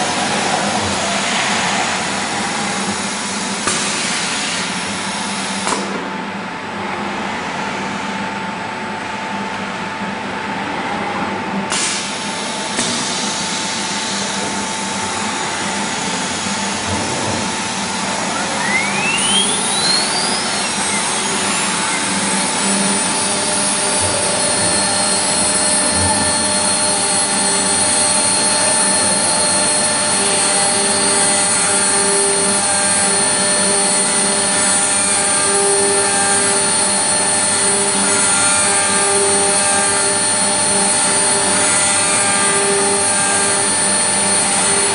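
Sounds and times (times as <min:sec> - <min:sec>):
milling machine whirring: 0:11.7 - 0:44.9
rising whine: 0:12.4 - 0:38.1.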